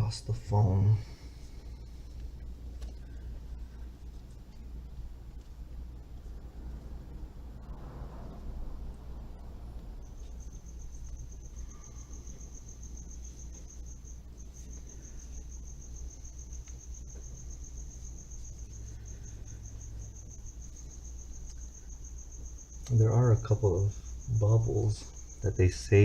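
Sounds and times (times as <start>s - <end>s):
low background hum: 0.0s - 26.0s
insect trilling: 8.8s - 26.0s.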